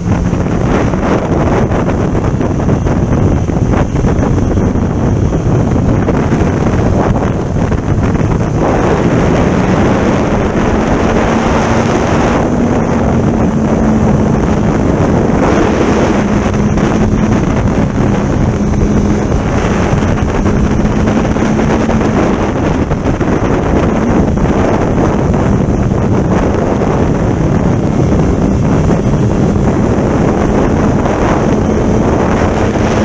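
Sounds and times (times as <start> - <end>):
motorcycle engine hum: 0.0 - 33.0
wind buffeting microphone: 0.0 - 33.0.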